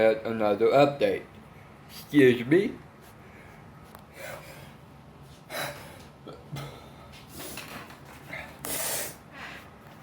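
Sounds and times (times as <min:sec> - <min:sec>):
man breathing and sniffing: 0:03.0 - 0:10.0.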